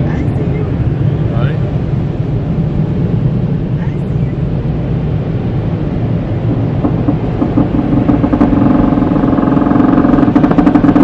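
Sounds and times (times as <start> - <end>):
car wash machinery rumble: 0.0 - 11.0
mechanical drone: 5.4 - 11.0.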